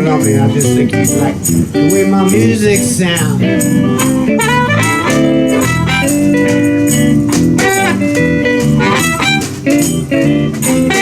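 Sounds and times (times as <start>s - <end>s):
electric guitar: 0.0s - 11.0s
live electric blues band: 0.0s - 11.0s.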